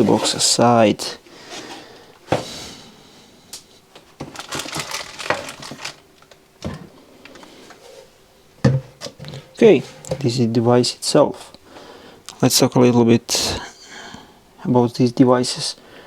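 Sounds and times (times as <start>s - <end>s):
wrapping crinkling: 4.0s - 6.5s.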